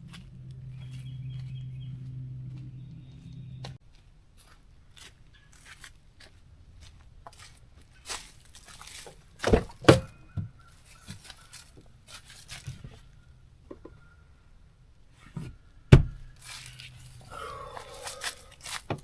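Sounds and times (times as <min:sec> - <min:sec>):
rustling and handling noises: 0:07.3 - 0:09.8, 0:10.8 - 0:13.1.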